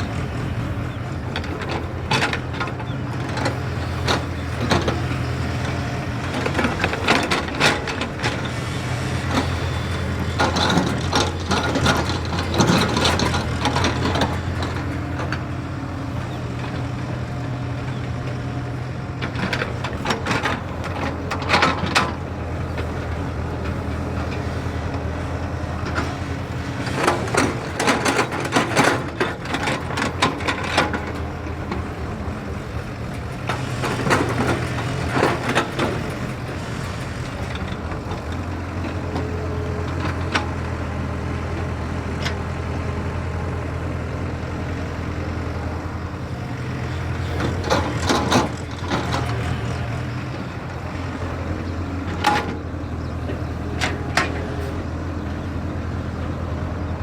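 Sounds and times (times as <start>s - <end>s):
excavator diesel engine running: 0.0s - 57.0s.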